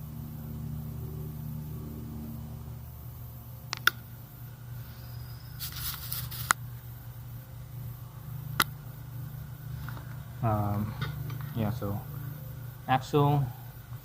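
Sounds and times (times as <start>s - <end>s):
steady low hum: 0.0s - 14.0s
metal parts scraping: 5.6s - 6.5s.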